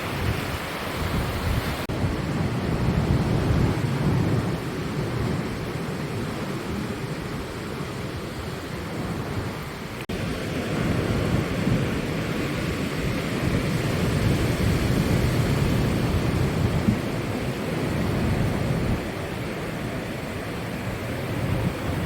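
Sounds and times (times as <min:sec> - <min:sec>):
ocean surf rumble: 0:00.0 - 0:22.0
wind buffeting microphone: 0:00.0 - 0:22.0.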